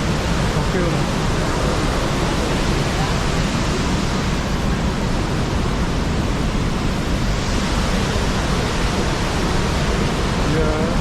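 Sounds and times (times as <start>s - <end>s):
loud steady rushing noise: 0.0s - 11.0s.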